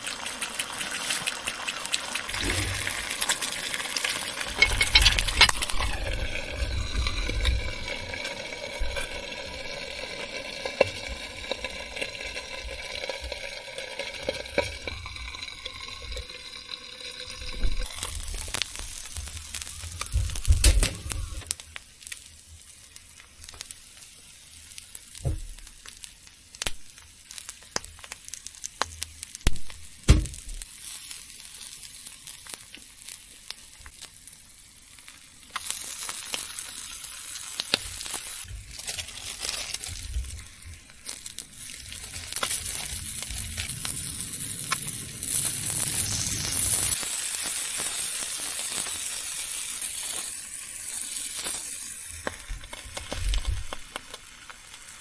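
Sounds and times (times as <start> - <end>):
food sizzling in a pan: 0.0 - 55.0
utensils clicking and knocking: 4.4 - 6.3.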